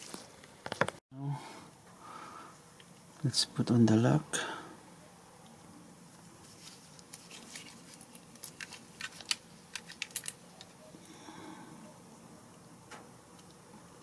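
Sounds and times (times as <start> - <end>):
metal lock parts clicking: 8.4 - 10.4.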